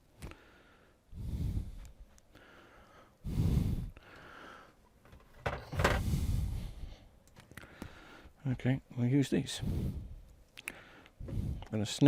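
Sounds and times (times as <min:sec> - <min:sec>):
man breathing heavily: 0:00.2 - 0:04.9, 0:05.8 - 0:08.4, 0:09.6 - 0:11.7.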